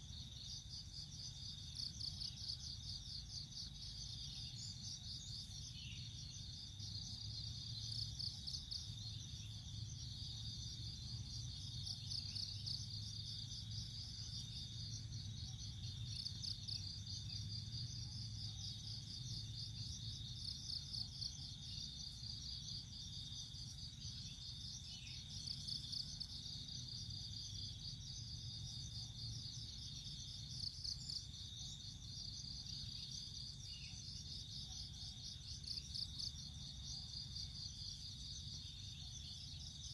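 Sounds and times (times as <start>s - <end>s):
insects chirping trill: 0.0s - 39.9s.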